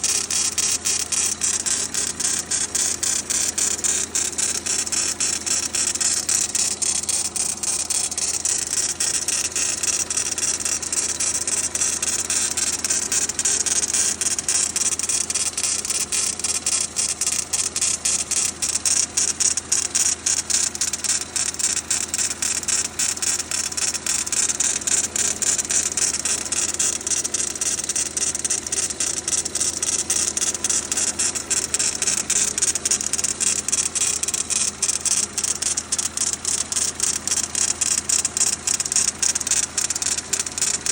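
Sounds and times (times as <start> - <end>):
engine with fast even knocking: 0.0 - 40.9.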